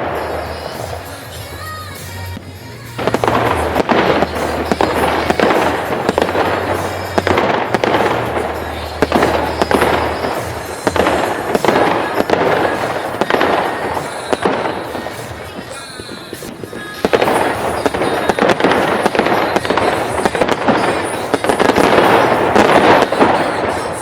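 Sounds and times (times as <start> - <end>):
low bass music: 0.0 - 12.8
fireworks bangs and crackling: 0.0 - 24.0.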